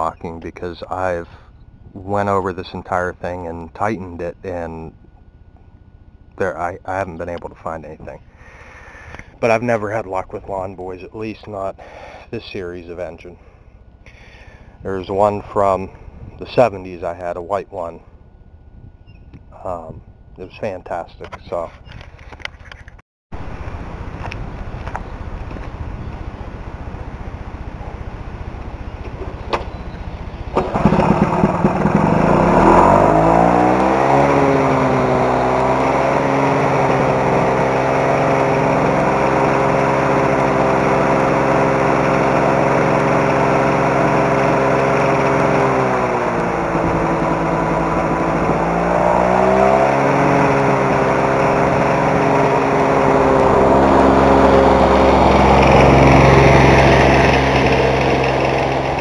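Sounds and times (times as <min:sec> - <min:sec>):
lawn mower engine running: 0:23.5 - 0:59.0.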